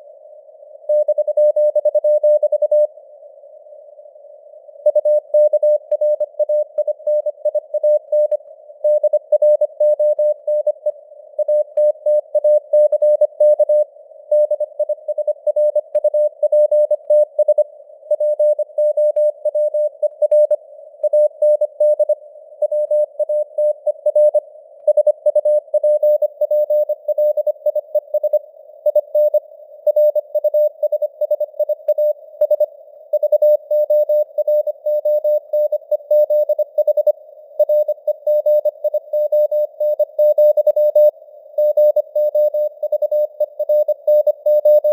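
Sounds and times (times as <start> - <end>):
morse code tone: 22.7 - 44.9.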